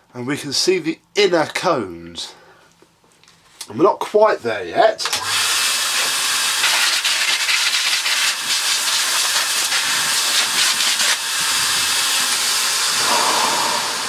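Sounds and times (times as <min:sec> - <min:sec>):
compressed air hissing: 0:05.4 - 0:14.0.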